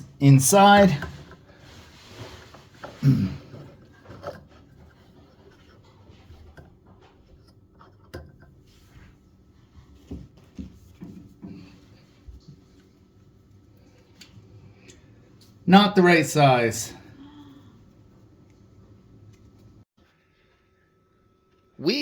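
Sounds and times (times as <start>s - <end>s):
person grunting: 3.0s - 3.4s.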